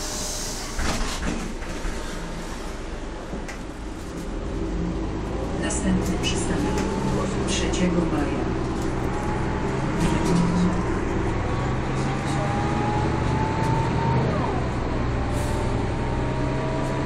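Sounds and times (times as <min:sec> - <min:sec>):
bus diesel engine drone: 0:00.0 - 0:17.0
gearbox whine rising in pitch: 0:09.1 - 0:17.0.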